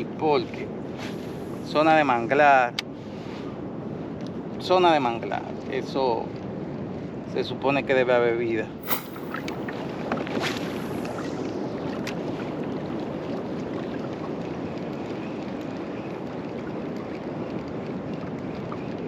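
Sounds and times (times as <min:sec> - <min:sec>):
wind: 0:00.0 - 0:19.0
water noise: 0:08.8 - 0:19.0.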